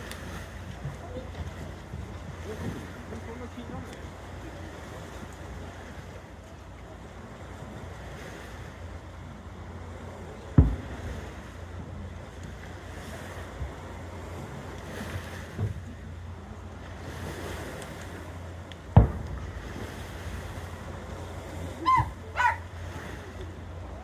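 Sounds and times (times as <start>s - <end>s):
firework burst booming: 10.6s - 11.4s, 18.9s - 20.7s
short voice-like cries: 21.8s - 22.6s.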